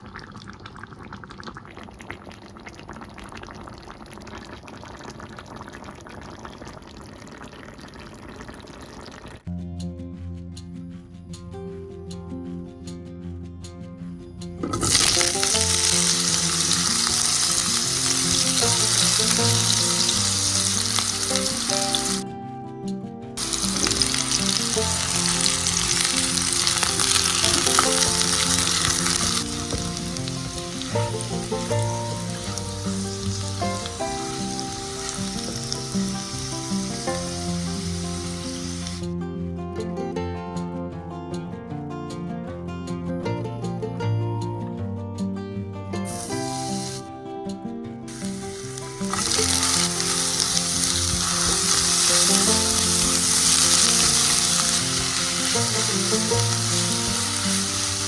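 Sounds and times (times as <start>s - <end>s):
stew bubbling at a boil: 0.0s - 9.4s, 14.6s - 22.2s, 23.4s - 39.1s, 46.1s - 47.0s, 48.1s - 58.0s
background music: 9.5s - 58.0s
food sizzling in oil: 14.6s - 22.2s, 23.4s - 39.1s, 46.1s - 47.1s, 48.1s - 58.0s.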